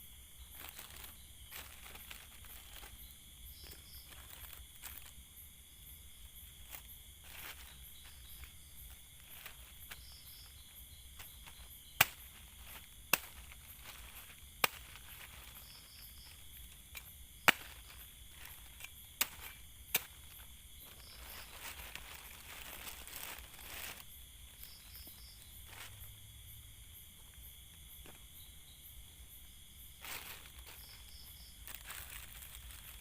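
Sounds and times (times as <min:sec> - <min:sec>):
campfire crackling: 0:00.0 - 0:26.1
sharp fire pops: 0:16.2 - 0:20.4.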